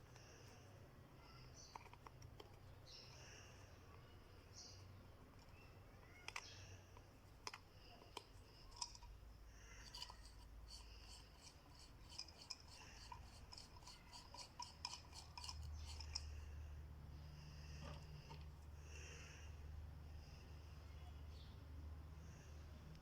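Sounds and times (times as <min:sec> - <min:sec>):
rapid light clicking and scraping: 0:01.3 - 0:16.6.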